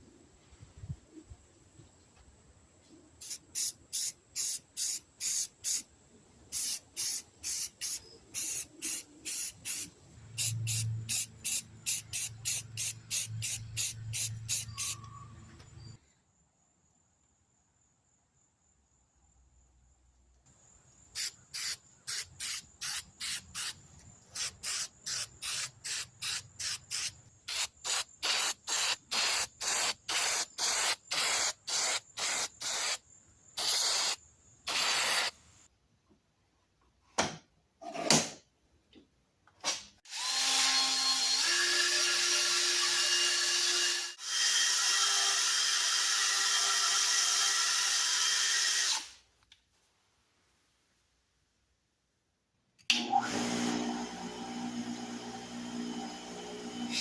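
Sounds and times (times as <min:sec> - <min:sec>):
spray paint hissing bursts: 0:03.2 - 0:05.9, 0:06.5 - 0:15.0, 0:21.1 - 0:33.0, 0:33.6 - 0:35.4.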